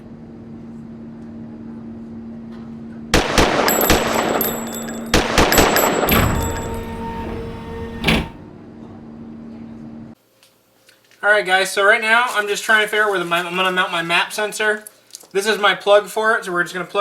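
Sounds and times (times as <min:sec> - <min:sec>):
rapid gunshots: 0:03.2 - 0:06.1
metallic clangs: 0:03.2 - 0:08.4
low hum: 0:03.2 - 0:09.9.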